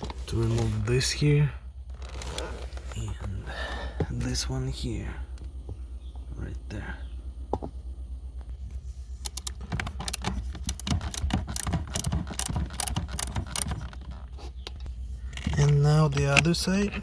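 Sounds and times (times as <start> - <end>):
ratchet clicking: 9.2 - 14.0.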